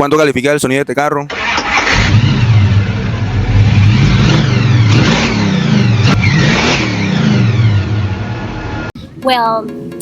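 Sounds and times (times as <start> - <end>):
car engine revving: 1.3 - 8.9.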